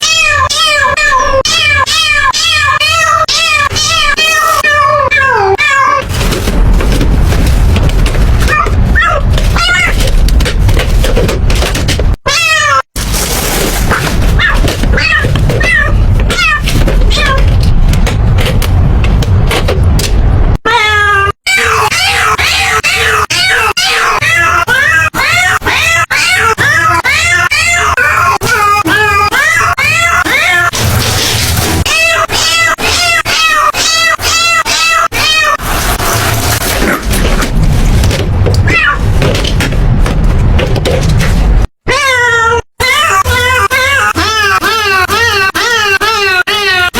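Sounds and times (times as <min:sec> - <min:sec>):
high cat meows: 0:00.0 - 0:06.0, 0:08.5 - 0:10.0, 0:12.2 - 0:12.9, 0:14.4 - 0:17.5, 0:20.7 - 0:30.7, 0:31.8 - 0:35.6, 0:38.6 - 0:39.1, 0:41.9 - 0:46.9
low rumble: 0:06.0 - 0:12.1.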